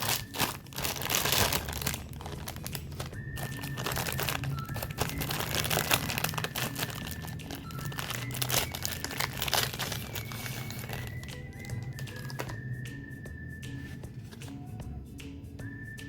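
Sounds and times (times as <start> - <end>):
snack wrappers crinkling: 0.0 - 12.7.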